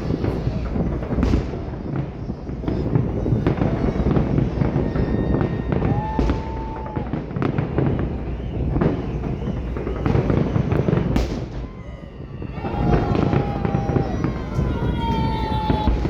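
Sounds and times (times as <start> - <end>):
fireworks bangs and crackles: 0.0 - 16.0
whistling tone: 7.6 - 14.8.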